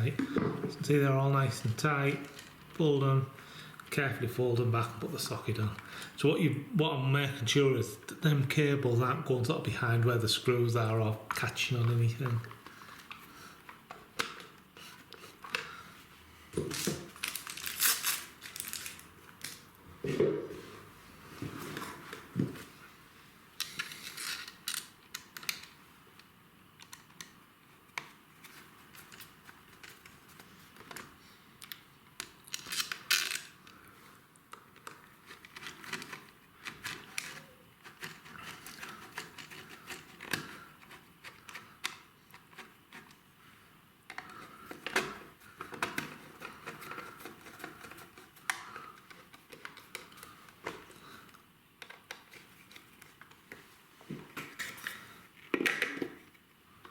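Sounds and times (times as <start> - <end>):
cables clicking and scraping: 34.8 - 43.2.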